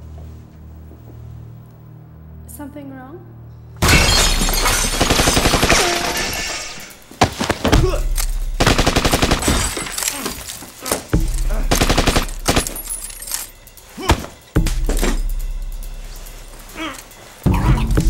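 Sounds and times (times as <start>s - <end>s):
low hum: 7.8s - 10.0s.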